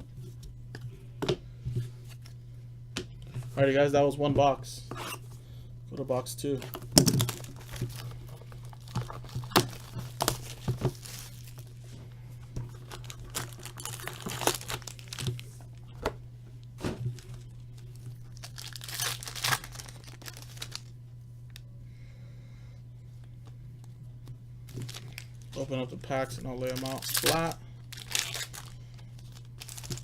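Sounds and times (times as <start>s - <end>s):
card packaging tearing and crinkling: 7.0s - 11.8s, 12.7s - 15.6s, 17.1s - 20.9s, 24.7s - 30.0s.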